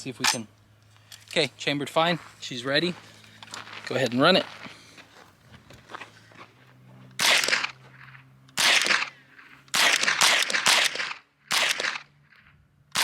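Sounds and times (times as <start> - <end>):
rifle shots: 7.2 - 12.1.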